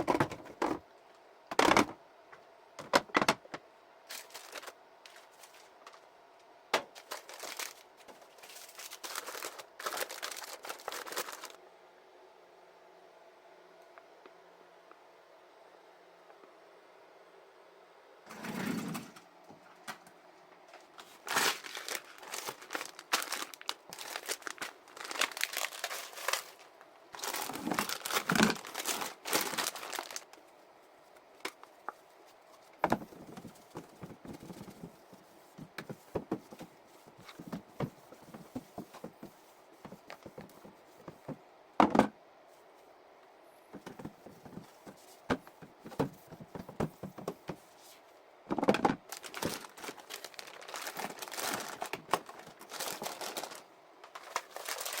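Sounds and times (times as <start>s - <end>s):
knocks and clicks of items handled: 0.0s - 0.8s, 32.8s - 42.1s, 43.8s - 47.7s, 48.5s - 49.7s
packaging crumpling and crinkling: 4.1s - 5.8s, 6.9s - 11.6s, 21.0s - 30.5s, 31.4s - 41.4s, 43.8s - 48.0s, 49.0s - 55.0s.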